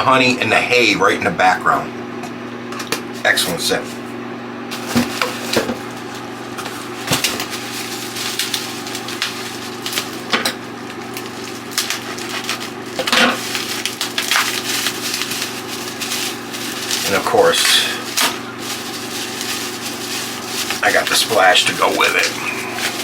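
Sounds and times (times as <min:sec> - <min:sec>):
steady low hum: 0:00.0 - 0:23.0
packaging rustling: 0:04.7 - 0:23.0.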